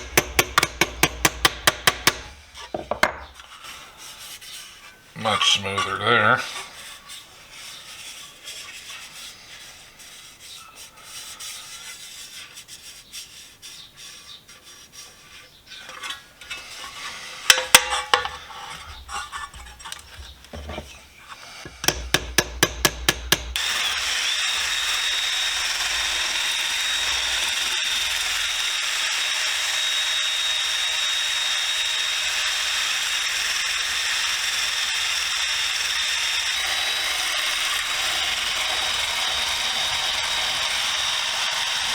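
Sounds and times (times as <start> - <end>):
sharp taps: 0.0 - 3.3, 21.7 - 23.6
power tool whining: 0.0 - 3.5, 16.5 - 41.9
filing on sheet metal: 0.0 - 4.9, 6.7 - 28.4.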